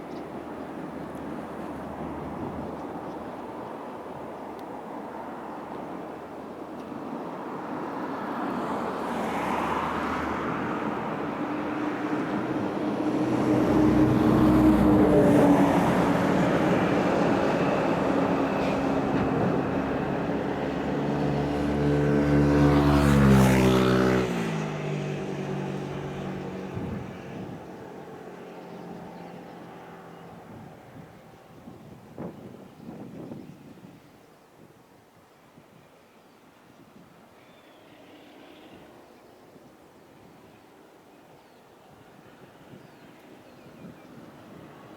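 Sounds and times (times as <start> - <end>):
locomotive engine passing: 8.2 - 31.3.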